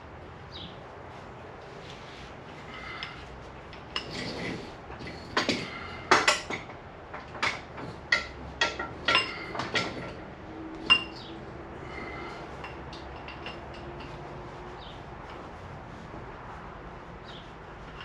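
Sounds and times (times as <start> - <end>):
metal tools clinking together: 7.4 - 10.2.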